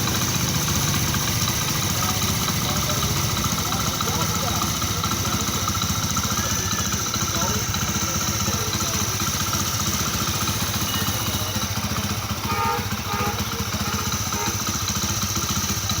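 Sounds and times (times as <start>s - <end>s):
motorcycle engine idling: 0.0s - 16.0s.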